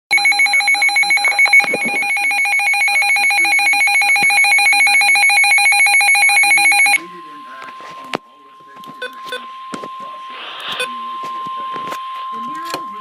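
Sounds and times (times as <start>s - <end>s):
pulsing electronic alert warble: 0.1s - 7.0s.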